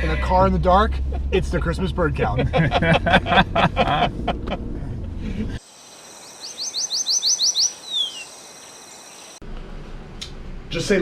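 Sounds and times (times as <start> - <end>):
car interior rumble: 0.0 - 5.6
songbird singing: 5.6 - 9.4.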